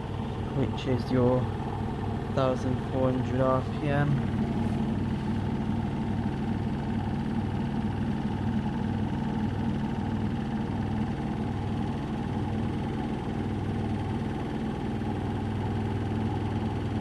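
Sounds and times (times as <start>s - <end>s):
washing machine spinning: 0.0s - 17.0s.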